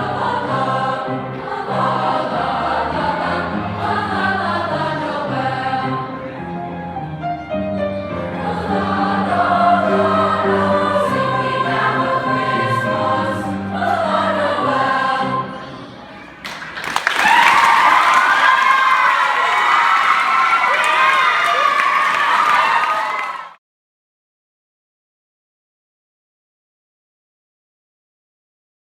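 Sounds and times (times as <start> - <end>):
choir singing: 0.0 - 16.4.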